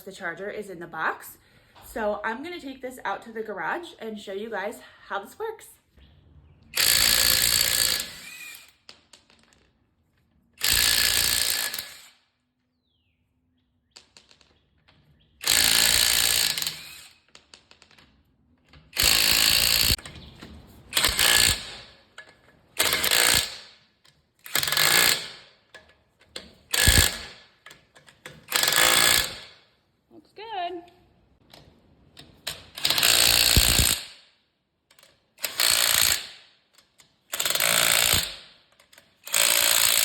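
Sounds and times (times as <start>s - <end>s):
impact wrench hammering bursts: 6.8s - 9.0s, 10.6s - 12.3s, 15.4s - 17.6s, 18.9s - 20.2s, 20.9s - 25.8s, 26.4s - 29.7s, 32.7s - 34.4s, 35.0s - 40.0s.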